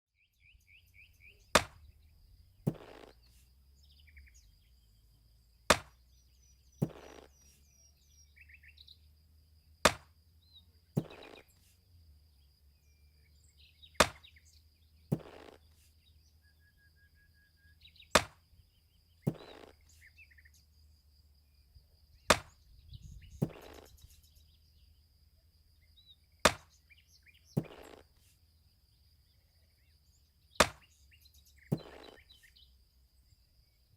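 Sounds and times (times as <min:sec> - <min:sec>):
birds chirping faintly: 0:00.1 - 0:33.9
axe chopping wood: 0:01.5 - 0:02.0, 0:02.6 - 0:03.2, 0:05.7 - 0:06.0, 0:06.7 - 0:07.5, 0:09.8 - 0:10.2, 0:11.0 - 0:11.5, 0:13.9 - 0:14.4, 0:15.1 - 0:15.8, 0:18.1 - 0:18.5, 0:19.2 - 0:19.9, 0:22.3 - 0:22.6, 0:23.4 - 0:24.0, 0:26.4 - 0:26.8, 0:27.5 - 0:28.3, 0:30.6 - 0:31.0, 0:31.7 - 0:32.3.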